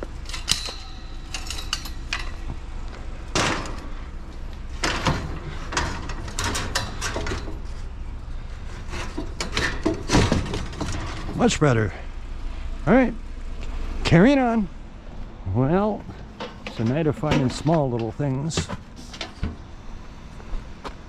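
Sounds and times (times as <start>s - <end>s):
scrap metal knocks and clanks: 0.0s - 8.0s, 8.6s - 11.6s, 16.0s - 19.7s.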